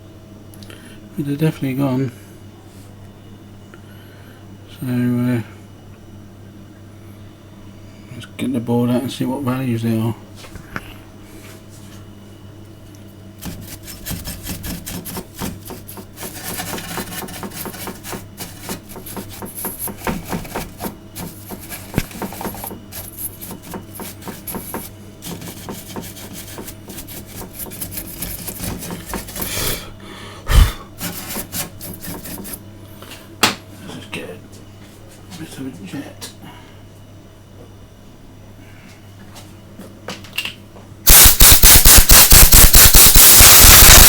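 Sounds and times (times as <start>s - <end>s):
scratching and rubbing with tools: 13.4s - 29.8s, 30.6s - 32.6s, 41.1s - 44.0s.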